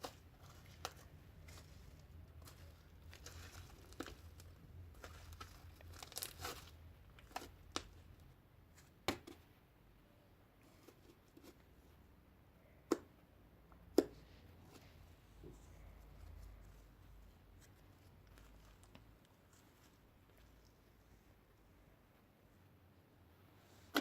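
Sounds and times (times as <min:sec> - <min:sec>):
slime crinkling and tearing: 0:00.0 - 0:08.2.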